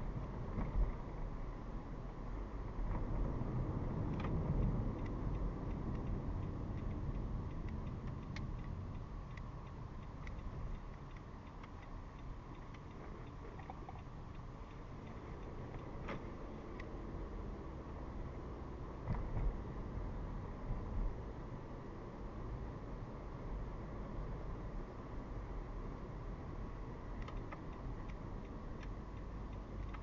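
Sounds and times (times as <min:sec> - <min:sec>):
engine and road rumble: 0:00.0 - 0:30.0
faint regular ticking: 0:04.1 - 0:16.0, 0:27.2 - 0:30.0.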